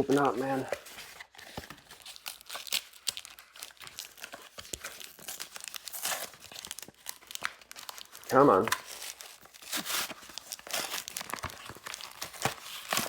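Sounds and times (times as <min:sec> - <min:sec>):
blister packaging crinkling: 0:00.0 - 0:13.0
packaging tearing rip: 0:05.0 - 0:13.0.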